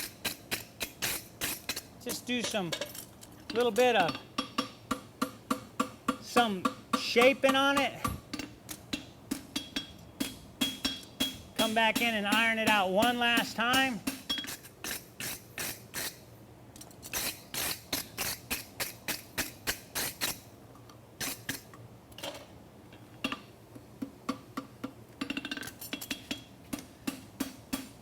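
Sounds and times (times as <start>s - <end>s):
hammer striking metal on anvil: 4.0s - 14.5s.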